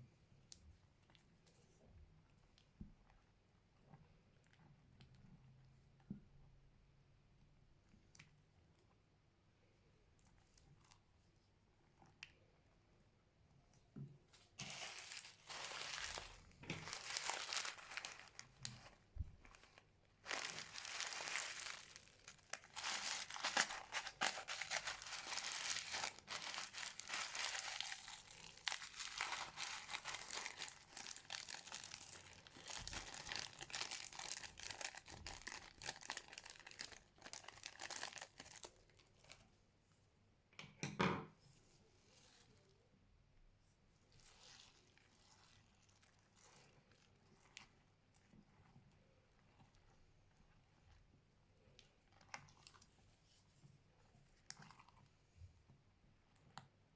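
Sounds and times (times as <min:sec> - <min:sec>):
slime squish: 0:14.2 - 0:39.4, 0:44.0 - 0:56.8
slime crackling: 0:14.6 - 0:38.8.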